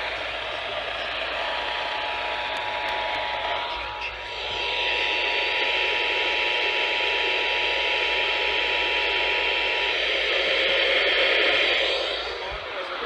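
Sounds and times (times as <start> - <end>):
radio static hiss: 8.6 - 13.0.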